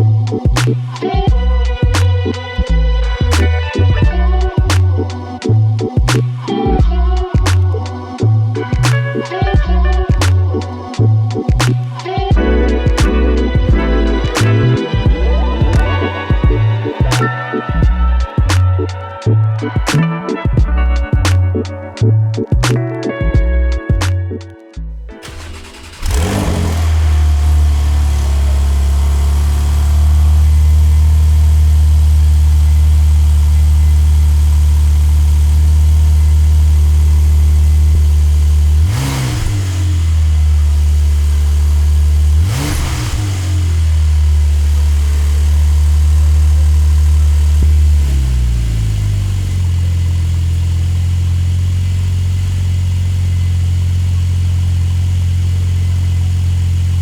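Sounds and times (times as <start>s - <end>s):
car engine starting and idling: 12.4s - 19.7s, 24.8s - 57.0s.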